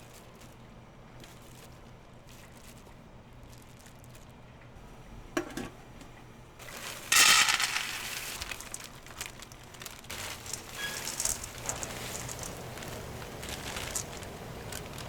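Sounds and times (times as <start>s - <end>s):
loud crackling crunch: 6.6s - 15.0s
soft rustling: 6.6s - 15.0s.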